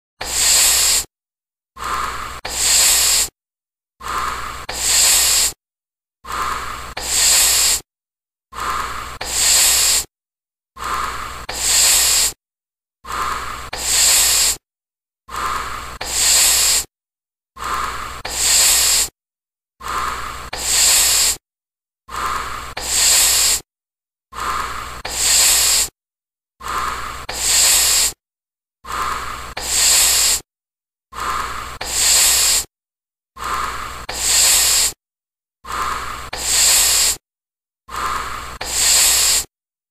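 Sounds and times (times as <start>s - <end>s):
hissing exhale: 0.2s - 1.1s, 1.8s - 3.3s, 4.0s - 5.6s, 6.2s - 7.8s, 8.5s - 10.1s, 10.8s - 12.4s, 13.0s - 14.6s, 15.3s - 16.9s, 17.6s - 19.1s, 19.8s - 21.4s, 22.1s - 23.6s, 24.3s - 25.9s, 26.6s - 28.2s, 28.8s - 30.4s, 31.1s - 32.7s, 33.4s - 35.0s, 35.6s - 37.2s, 37.9s - 39.5s
person inhaling smoke: 0.2s - 1.1s, 1.8s - 3.3s, 4.0s - 5.6s, 6.3s - 7.8s, 8.5s - 10.1s, 10.8s - 12.4s, 13.0s - 14.6s, 15.3s - 16.9s, 17.6s - 19.1s, 19.8s - 21.4s, 22.1s - 23.6s, 24.3s - 25.9s, 26.6s - 28.2s, 28.8s - 30.4s, 31.1s - 32.7s, 33.4s - 35.0s, 35.6s - 37.2s, 37.9s - 39.5s.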